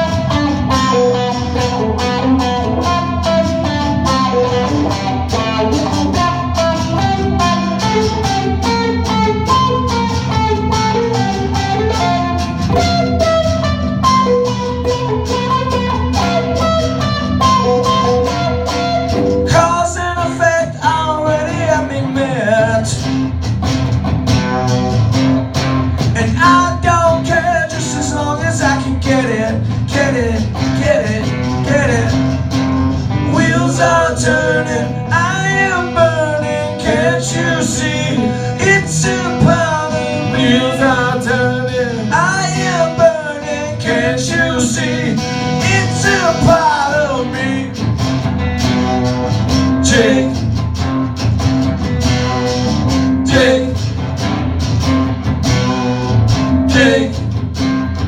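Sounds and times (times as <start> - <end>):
wavering lead melody: 0.0 - 20.6
strummed acoustic guitar: 0.0 - 58.0.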